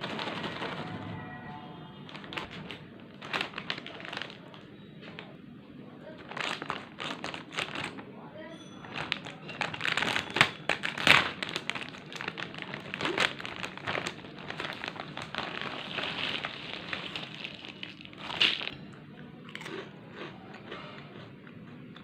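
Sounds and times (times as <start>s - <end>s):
chewing crisp chips: 6.2s - 8.0s, 8.9s - 22.0s.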